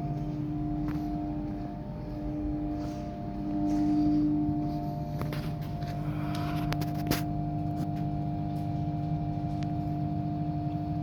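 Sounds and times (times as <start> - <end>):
electric blower fan humming: 0.0 - 11.0.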